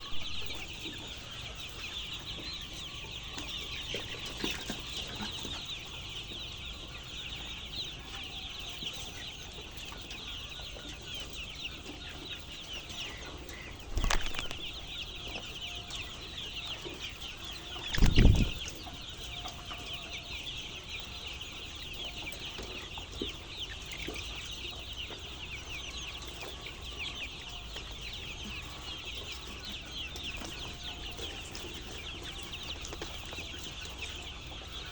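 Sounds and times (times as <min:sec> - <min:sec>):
chicks peeping: 0:00.0 - 0:34.9.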